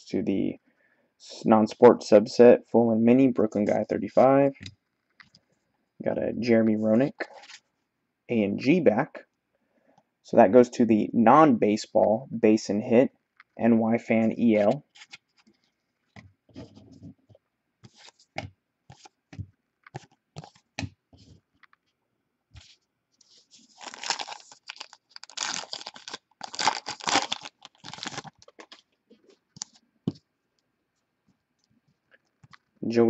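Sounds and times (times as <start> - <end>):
wrapper tearing and crinkling: 23.7 - 28.8.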